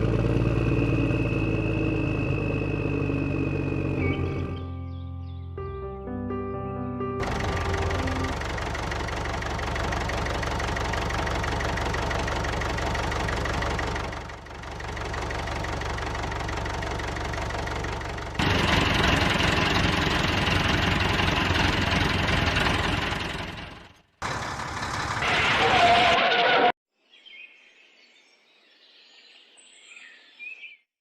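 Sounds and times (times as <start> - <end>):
engine idling with rough knocking: 7.2 - 25.5.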